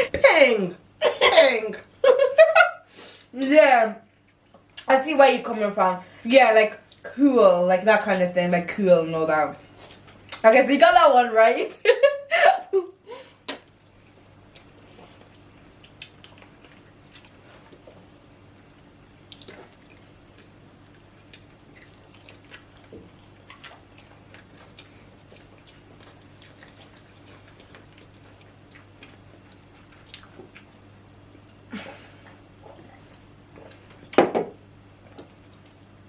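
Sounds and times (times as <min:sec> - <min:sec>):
steady low hum: 0:00.0 - 0:36.0
people chewing food: 0:13.4 - 0:34.2.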